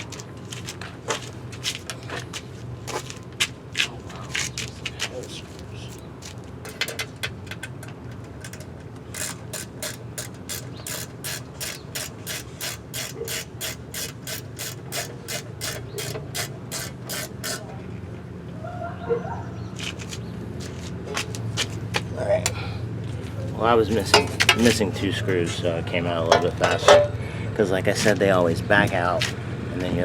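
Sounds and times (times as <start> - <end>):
ratchet tool clicking: 6.7 - 17.7.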